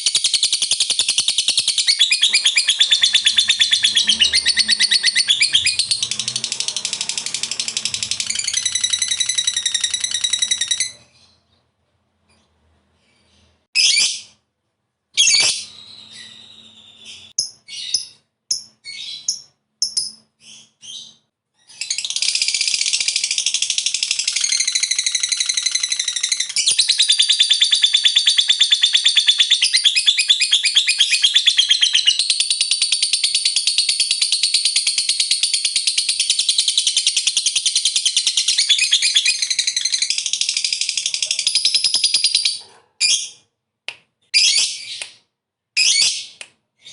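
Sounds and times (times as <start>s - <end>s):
lovebird rapid chattering trill: 0.0s - 10.9s, 22.0s - 42.6s
lovebird chirps: 0.0s - 11.7s, 15.2s - 43.4s.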